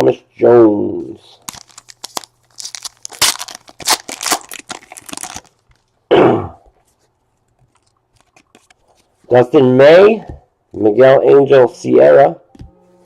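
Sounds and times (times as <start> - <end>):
plastic wrapper tearing and crinkling: 1.4 - 6.0.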